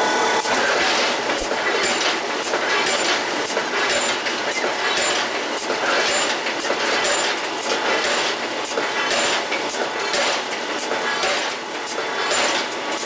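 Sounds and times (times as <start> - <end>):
metallic clicks and clanks: 0.4 - 13.0.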